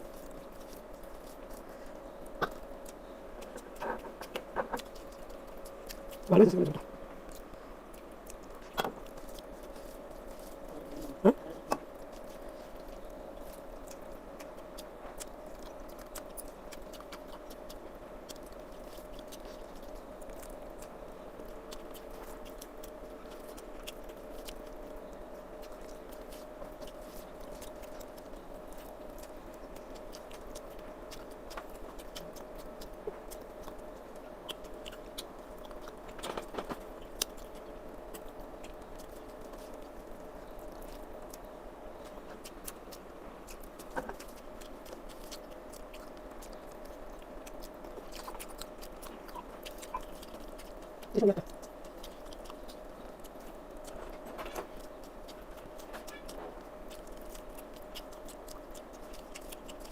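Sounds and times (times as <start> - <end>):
person chewing food: 0.0 - 59.9
steady background hum: 0.0 - 59.9.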